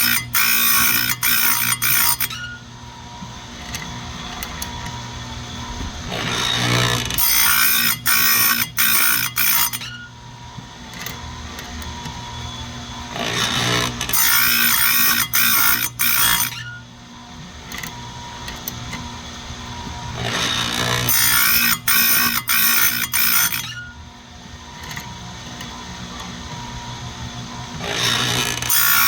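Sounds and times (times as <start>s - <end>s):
grinding wheel strokes on chain: 0.0s - 2.6s, 6.1s - 10.1s, 10.9s - 16.8s, 20.1s - 24.0s, 27.8s - 29.0s
chain grinder humming: 0.0s - 10.2s, 10.8s - 16.8s, 17.6s - 19.1s, 20.1s - 24.0s, 24.6s - 26.8s, 27.6s - 29.0s.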